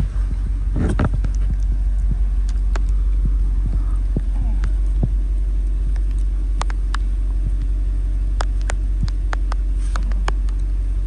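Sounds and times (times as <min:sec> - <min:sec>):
truck engine rumbling: 0:00.0 - 0:11.0.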